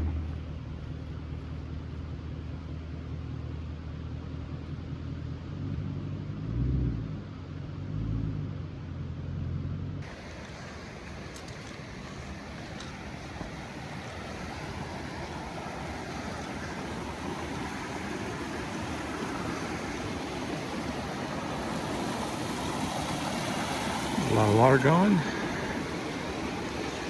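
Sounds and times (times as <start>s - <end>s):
fast-flowing creek rushing: 10.0s - 27.0s.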